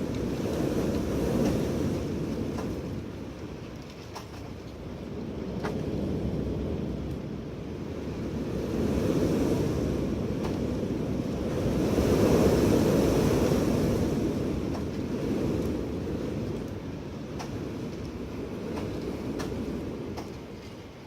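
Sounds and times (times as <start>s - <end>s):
strong wind gusting: 0.0s - 21.0s.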